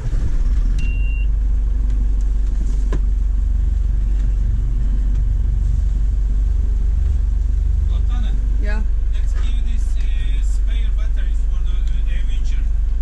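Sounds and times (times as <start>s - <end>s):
diesel engine droning: 0.0s - 13.0s.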